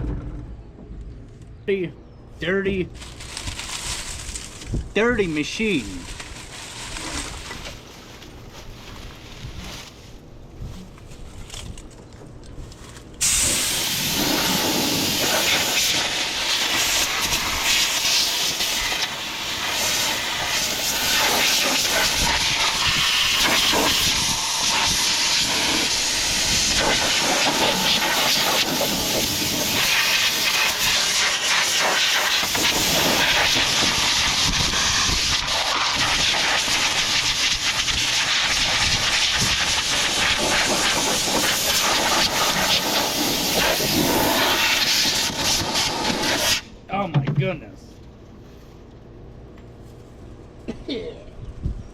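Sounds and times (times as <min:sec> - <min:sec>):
compressed air hissing: 0:13.2 - 0:46.7.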